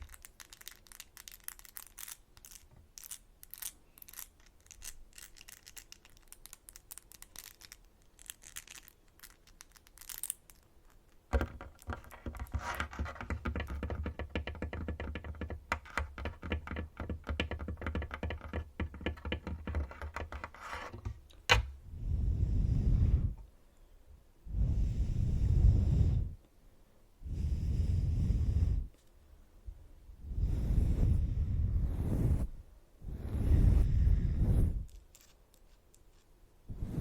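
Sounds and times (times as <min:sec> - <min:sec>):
fingernails tapping on a tabletop: 0:11.4 - 0:21.6
breath blown onto microphone: 0:21.8 - 0:23.4, 0:24.5 - 0:26.4, 0:27.2 - 0:28.9, 0:30.2 - 0:35.0, 0:36.7 - 0:37.0.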